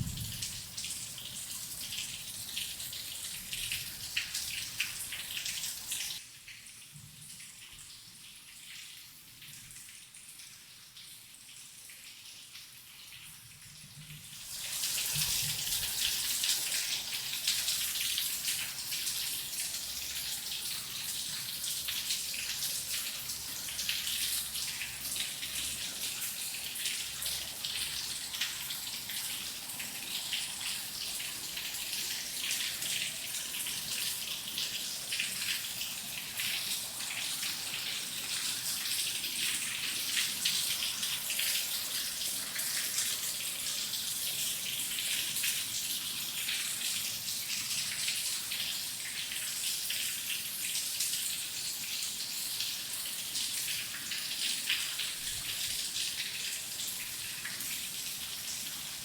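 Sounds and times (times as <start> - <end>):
heavy rain: 0.0 - 1.2.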